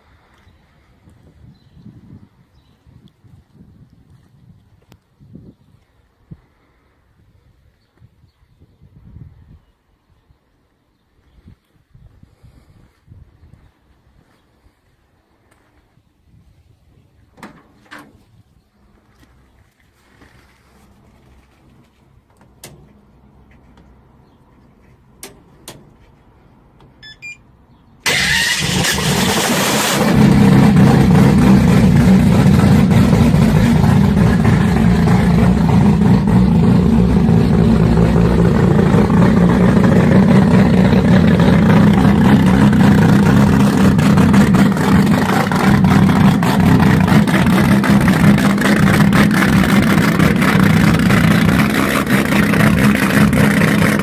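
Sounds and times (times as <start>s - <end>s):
turbo engine starting and running: 28.0s - 54.0s.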